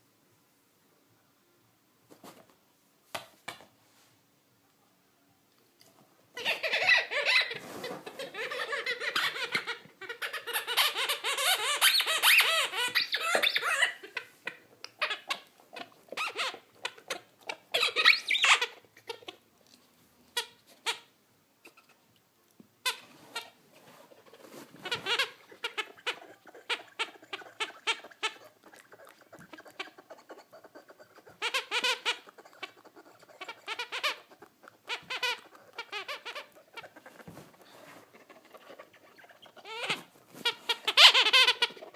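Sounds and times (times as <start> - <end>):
rubber ball squeaking: 6.4 - 19.4, 31.4 - 32.3, 34.9 - 37.0, 39.1 - 41.9.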